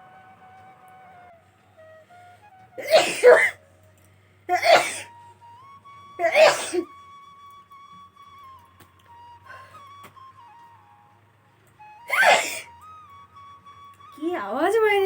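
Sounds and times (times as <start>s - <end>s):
woman sneezing loudly: 2.8s - 3.6s, 4.5s - 5.1s, 6.2s - 6.9s, 12.1s - 12.7s.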